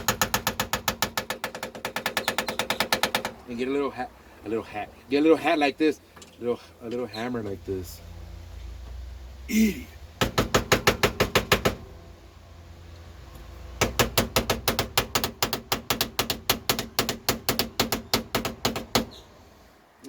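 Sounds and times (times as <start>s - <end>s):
small hammer tapping on metal: 13.8s - 19.1s.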